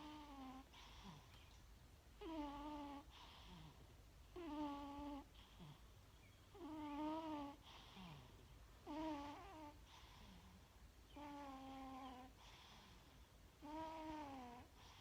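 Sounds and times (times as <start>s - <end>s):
cat snoring: 0.0s - 1.4s, 2.2s - 5.9s, 6.5s - 13.0s, 13.6s - 15.0s.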